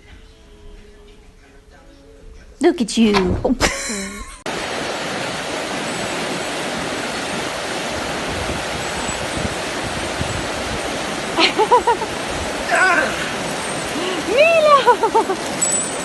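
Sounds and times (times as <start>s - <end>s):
steady rushing noise: 4.5s - 16.0s.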